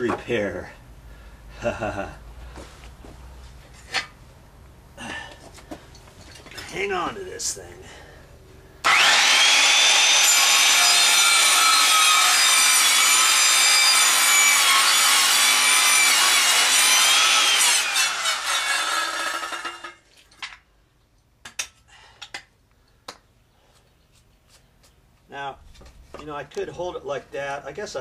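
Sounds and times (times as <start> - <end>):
circular saw cutting wood: 8.8 - 20.0.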